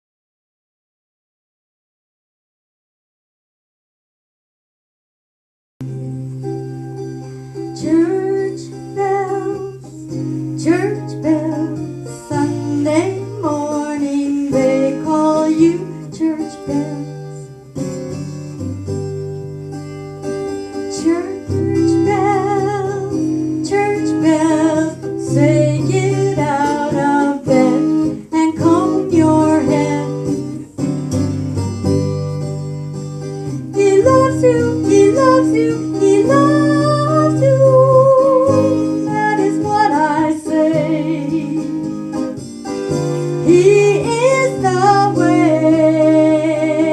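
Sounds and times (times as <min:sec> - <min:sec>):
plucked acoustic guitar: 0:05.8 - 0:46.9
woman singing country song: 0:07.6 - 0:18.4, 0:20.2 - 0:31.3, 0:33.5 - 0:46.9.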